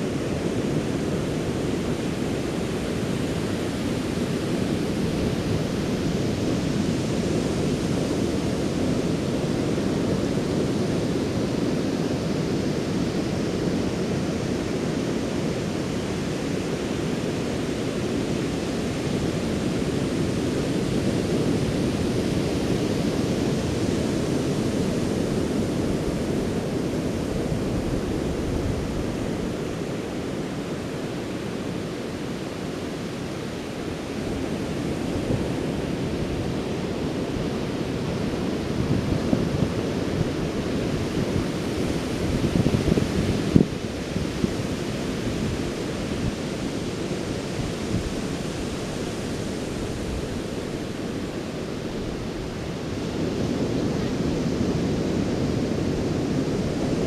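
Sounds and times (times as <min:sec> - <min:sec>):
waves washing on beach: 0:00.0 - 0:57.0.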